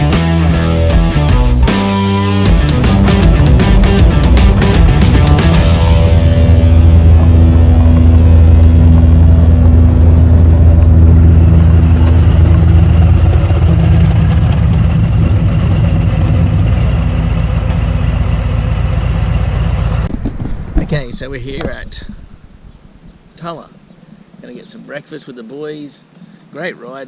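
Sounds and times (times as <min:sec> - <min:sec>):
motorcycle engine running: 0:00.0 - 0:23.3.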